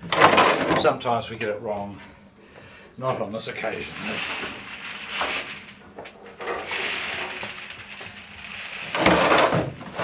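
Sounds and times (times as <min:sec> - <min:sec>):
rotating drum rattling hiss: 0:00.0 - 0:10.0
peanuts pouring out: 0:03.6 - 0:05.8, 0:06.4 - 0:10.0.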